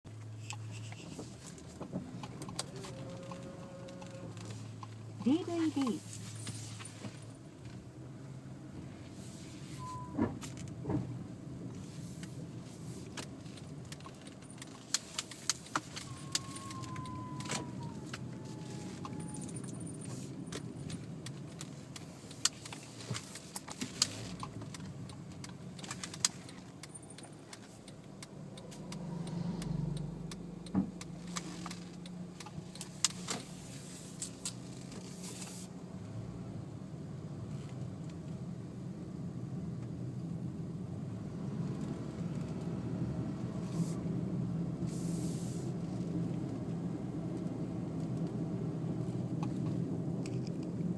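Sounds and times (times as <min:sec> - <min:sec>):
car running hum: 0:00.1 - 0:50.9
sharp clicks and rattles: 0:13.1 - 0:35.2, 0:49.3 - 0:50.9
brief high squeaks: 0:16.0 - 0:20.2.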